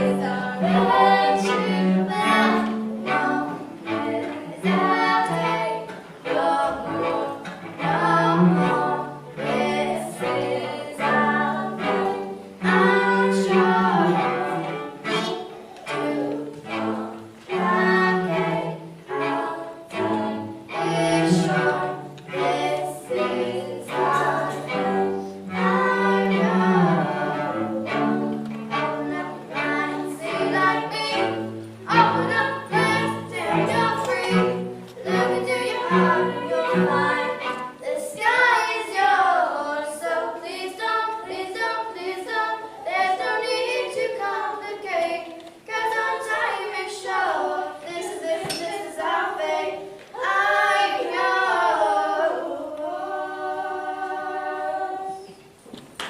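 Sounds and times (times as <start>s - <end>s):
bowed strings playing melody: 0.0s - 42.8s.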